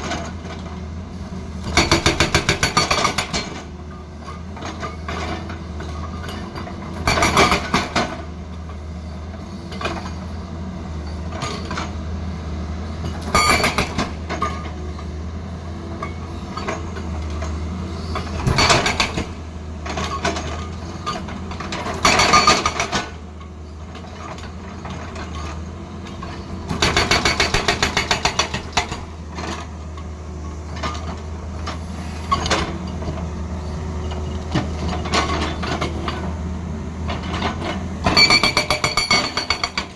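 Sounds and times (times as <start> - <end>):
excavator diesel engine: 0.0 - 39.9
hydraulic breaker hammering stone: 1.7 - 3.6, 18.3 - 20.5, 21.1 - 23.2, 26.7 - 29.1, 38.0 - 39.9.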